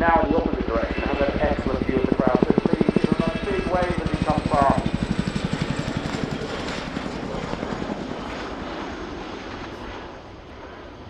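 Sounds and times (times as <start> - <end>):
helicopter rotor blade slap: 0.0 - 10.1.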